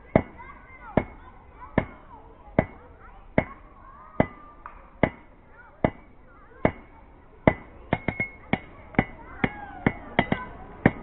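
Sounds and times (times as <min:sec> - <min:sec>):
hammer striking iron on anvil: 0:05.0 - 0:06.9, 0:07.5 - 0:11.0.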